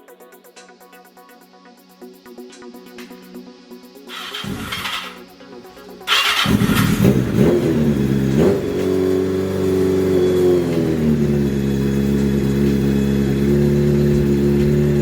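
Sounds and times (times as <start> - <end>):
motorcycle engine revving and idling: 4.1 - 15.0.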